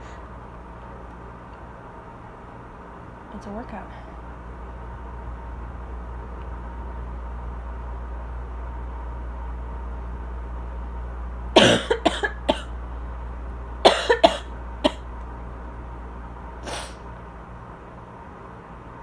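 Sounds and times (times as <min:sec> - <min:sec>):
air conditioner humming: 0:00.0 - 0:19.0
dry coughing: 0:11.6 - 0:12.7, 0:13.8 - 0:15.0.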